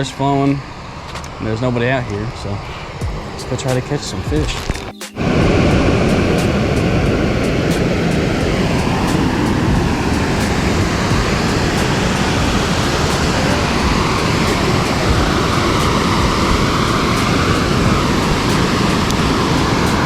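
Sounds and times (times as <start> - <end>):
water rushing over a spillway: 5.2 - 20.0.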